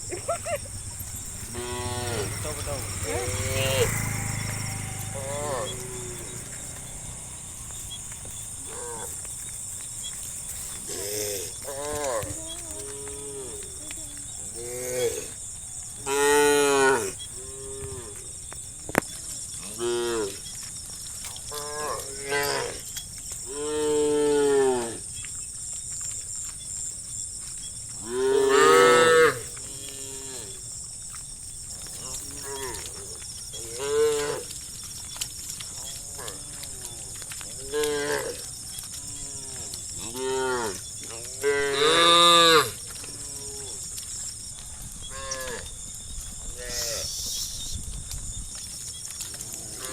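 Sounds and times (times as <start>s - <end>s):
cows mooing: 0.0s - 9.4s, 10.1s - 18.4s, 19.6s - 20.5s, 21.5s - 22.9s, 23.5s - 25.0s, 28.0s - 30.6s, 31.7s - 34.7s, 35.7s - 43.8s.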